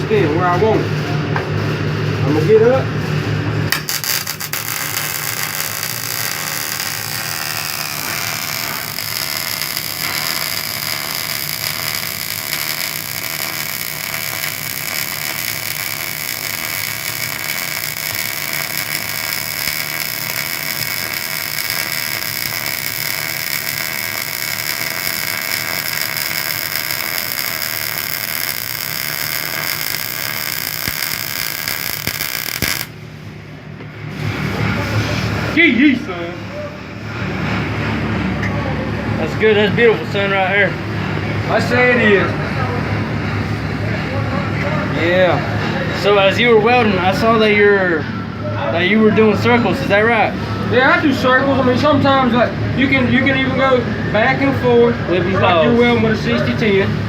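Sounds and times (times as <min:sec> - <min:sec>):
welding arc crackling: 0:03.7 - 0:33.0.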